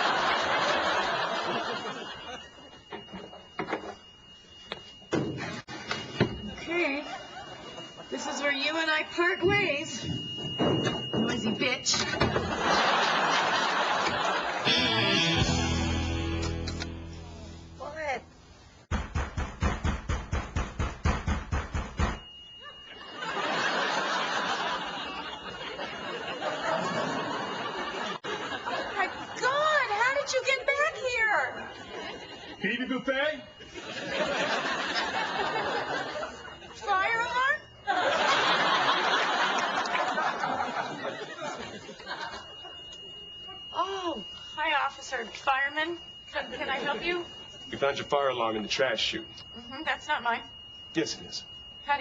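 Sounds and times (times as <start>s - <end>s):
studio audience laughing: 0.0s - 3.3s, 7.0s - 8.2s, 12.1s - 15.4s, 22.6s - 29.4s, 31.6s - 32.7s, 33.6s - 36.8s, 37.8s - 42.8s
faint high steady tone: 0.0s - 15.2s, 22.1s - 52.0s.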